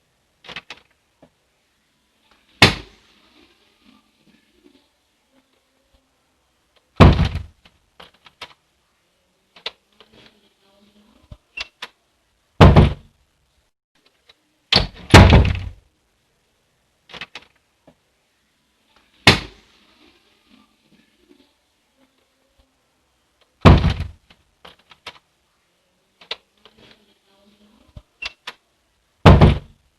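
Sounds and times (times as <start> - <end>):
door closing with thud: 7.0 - 7.5, 14.8 - 15.8, 23.6 - 24.2, 29.2 - 29.7.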